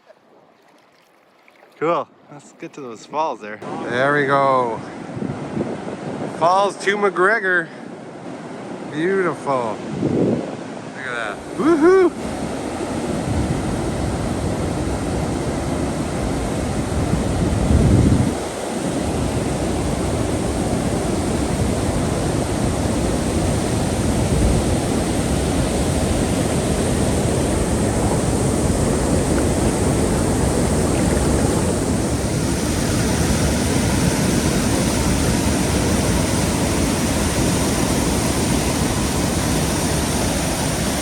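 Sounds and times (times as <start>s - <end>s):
waterfall and rapids rushing: 10.5s - 41.0s.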